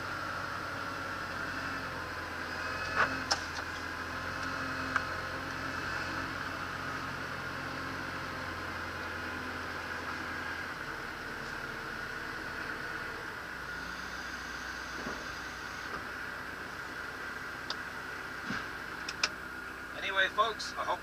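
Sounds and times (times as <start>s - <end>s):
tractor diesel engine running: 0.0s - 21.0s
sharp clicks: 19.0s - 19.4s.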